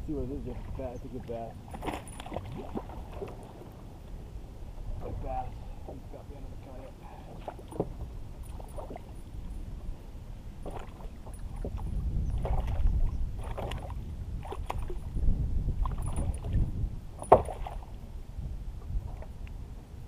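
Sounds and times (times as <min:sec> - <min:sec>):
water sloshing and splashing: 0:00.4 - 0:04.0, 0:04.8 - 0:09.8, 0:10.5 - 0:18.0
knocks on a kayak: 0:17.2 - 0:17.6.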